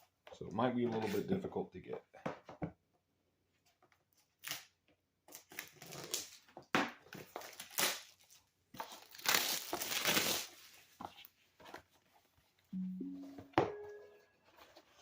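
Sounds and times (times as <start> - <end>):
plastic and cardboard packaging crinkling: 7.2 - 12.0.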